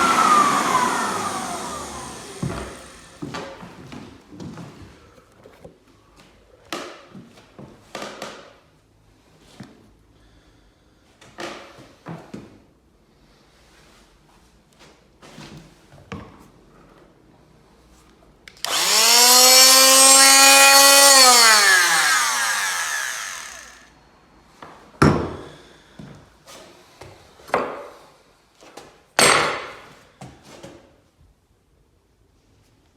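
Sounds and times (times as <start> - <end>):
power tool motor running: 0.0 - 3.3, 18.6 - 23.9.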